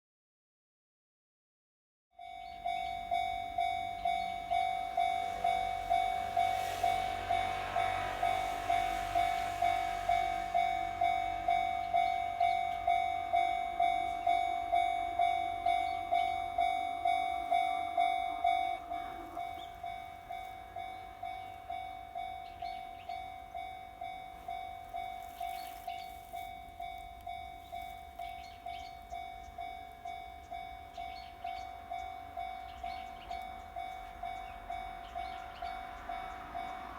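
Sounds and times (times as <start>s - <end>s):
level crossing warning bell: 2.2s - 36.9s
rushing noise: 5.3s - 11.6s.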